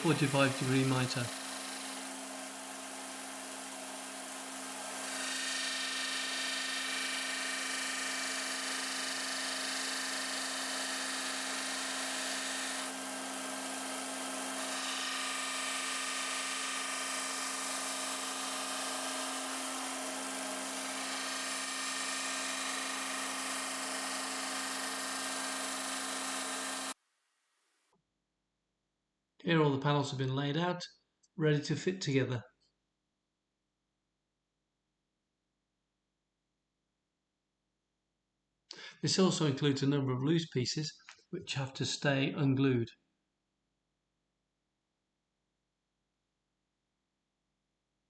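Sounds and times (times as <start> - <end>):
disc sander running: 0.0 - 27.0.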